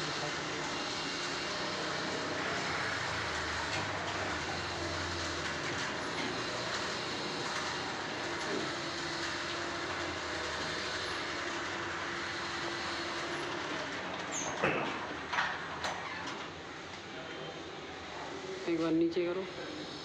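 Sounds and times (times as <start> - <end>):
garage door rumbling: 1.8 - 16.7.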